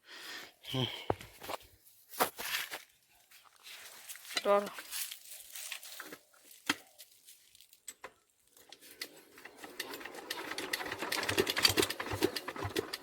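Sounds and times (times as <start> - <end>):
diesel engine hand-cranked chuffing: 9.0 - 13.0.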